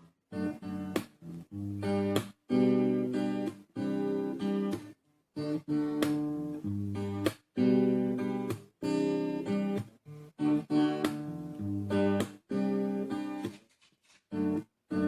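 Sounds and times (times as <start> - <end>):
acoustic guitar strummed chords: 0.0 - 13.6.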